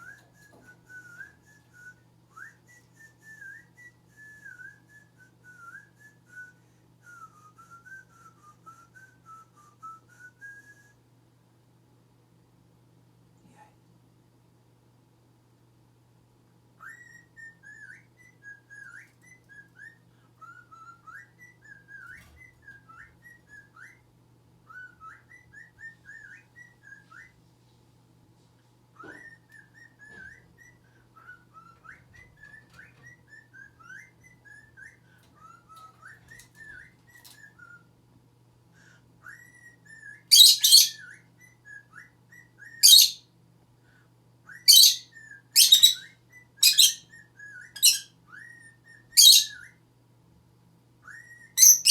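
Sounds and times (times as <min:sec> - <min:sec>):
lovebird chirping and whistling: 0:39.3 - 0:43.2, 0:44.5 - 0:49.8, 0:51.0 - 0:51.9.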